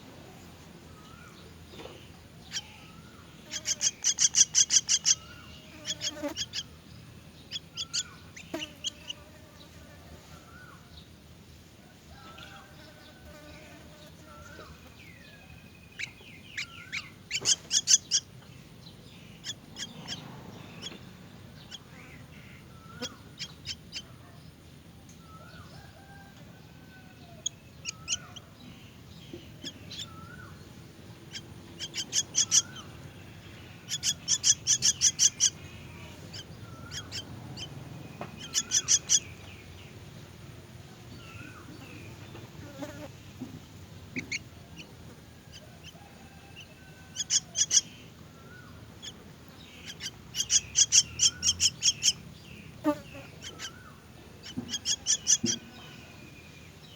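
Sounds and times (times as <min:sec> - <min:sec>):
nestlings harsh begging calls: 0:02.4 - 0:06.8, 0:07.4 - 0:09.2, 0:15.9 - 0:18.4, 0:19.2 - 0:24.3, 0:27.4 - 0:28.6, 0:29.4 - 0:39.7, 0:44.1 - 0:56.1.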